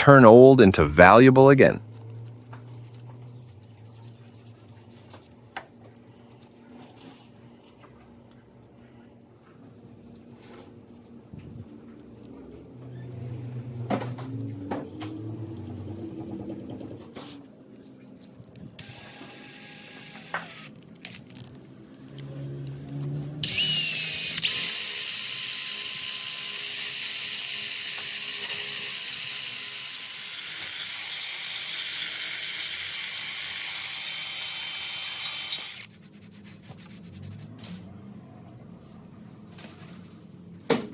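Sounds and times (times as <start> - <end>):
power tool high-pitched hiss: 30.4 - 35.8.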